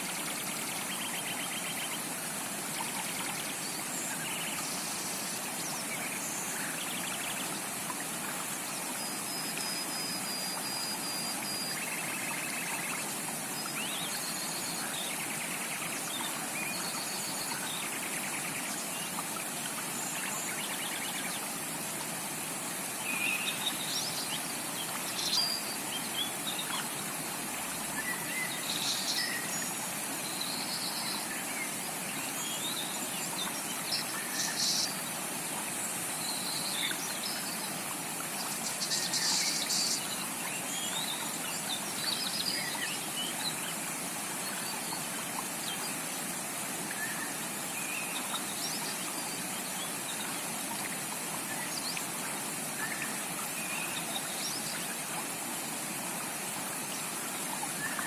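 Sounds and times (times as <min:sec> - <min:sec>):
stream rushing: 0:11.8 - 0:58.0.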